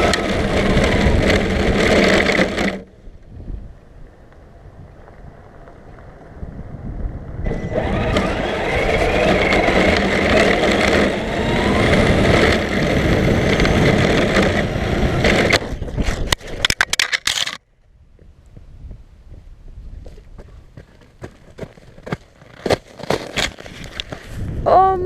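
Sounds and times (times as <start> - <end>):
motor whine: 0.0 - 2.9, 7.3 - 15.8
rc car motor and tyre noise: 0.0 - 3.4, 4.0 - 17.6, 22.5 - 24.4.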